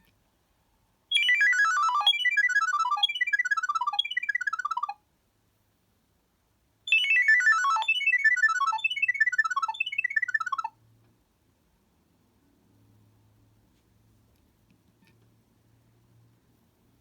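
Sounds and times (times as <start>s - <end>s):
polyphonic phone ringtone: 1.1s - 5.0s, 6.9s - 10.7s.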